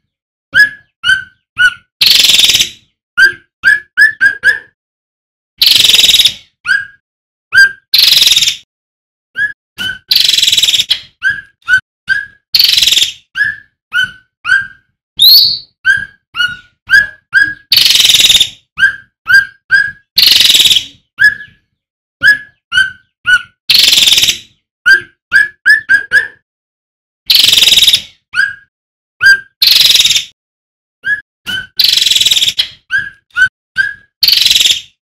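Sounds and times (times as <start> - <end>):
bird singing sharp calls: 0.6 - 4.3, 7.6 - 8.6, 9.4 - 21.6, 22.2 - 26.0, 27.3 - 28.6, 29.2 - 30.3, 31.0 - 35.0.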